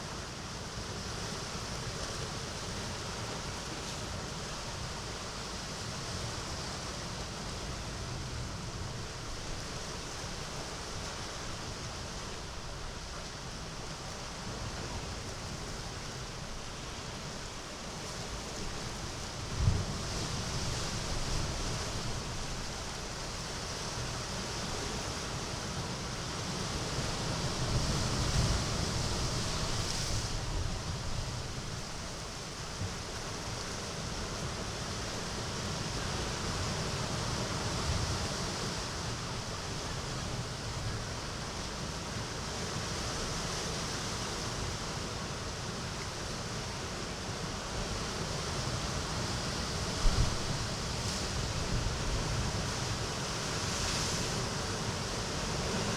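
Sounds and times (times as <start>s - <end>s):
sea waves washing ashore: 0.0s - 55.9s.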